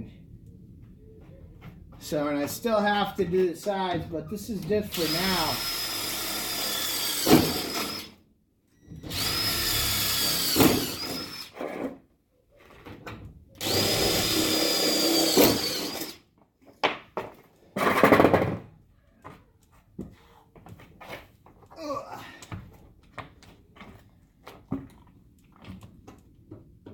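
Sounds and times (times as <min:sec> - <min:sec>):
power drill whining: 0:04.9 - 0:08.2, 0:08.8 - 0:11.9, 0:13.6 - 0:16.2.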